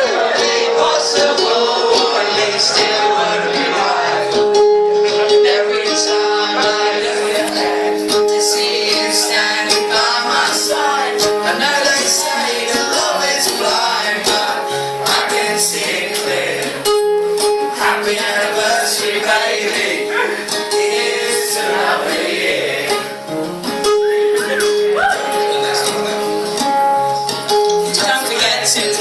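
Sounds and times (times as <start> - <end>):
melody of held notes: 0.0 - 29.0
strummed acoustic guitar: 0.0 - 29.0.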